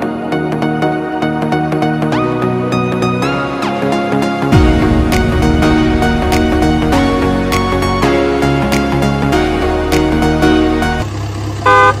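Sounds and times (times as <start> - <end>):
melodic background music: 0.0 - 11.1
vehicle horn honk: 11.6 - 12.0.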